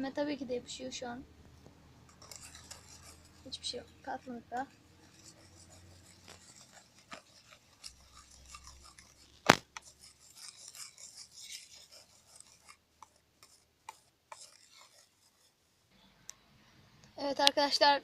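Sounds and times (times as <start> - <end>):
slime squishing and scraping: 2.1 - 15.6
sharp knock: 9.4 - 9.7.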